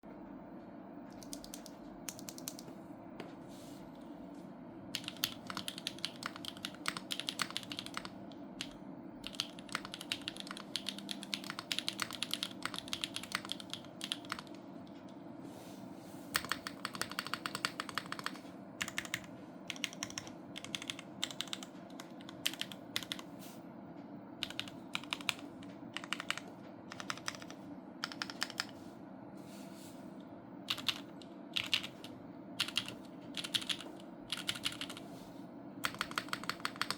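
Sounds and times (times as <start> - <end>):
mechanical keyboard typing: 1.1 - 2.7, 5.0 - 14.6, 16.4 - 23.3, 24.4 - 28.8, 30.7 - 35.0, 35.8 - 36.9.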